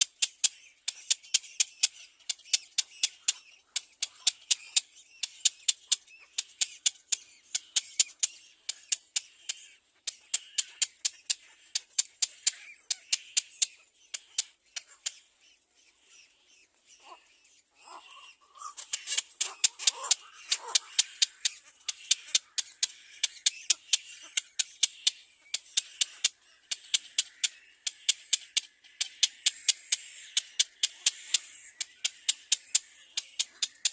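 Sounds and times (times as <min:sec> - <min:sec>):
baby bird calling: 0:00.0 - 0:33.9.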